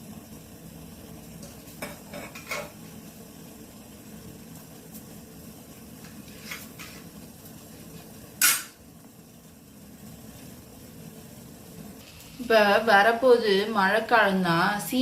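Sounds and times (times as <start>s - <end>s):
pot and utensil clinks: 8.4s - 8.8s.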